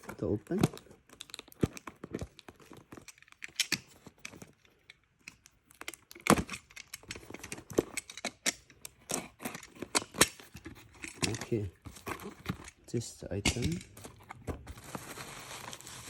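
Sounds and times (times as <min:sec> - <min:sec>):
tape tearing: 0:05.8 - 0:16.0
clicks and knocks: 0:13.4 - 0:14.6.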